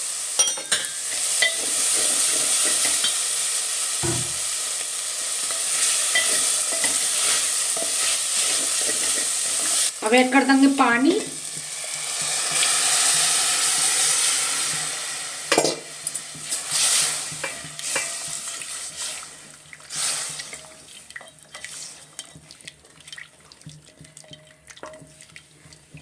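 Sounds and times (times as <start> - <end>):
food sizzling: 0.0 - 26.0
water splashing into hot pot: 10.8 - 26.0.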